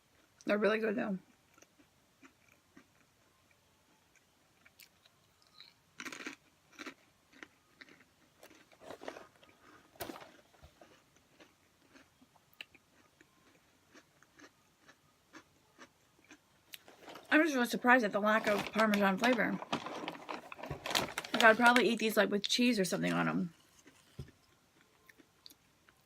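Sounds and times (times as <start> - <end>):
crunching crispy crackers: 1.2 - 26.0.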